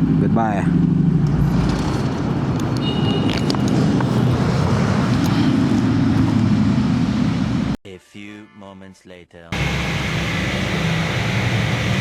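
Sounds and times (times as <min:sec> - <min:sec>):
vehicle engine running: 0:00.0 - 0:07.8.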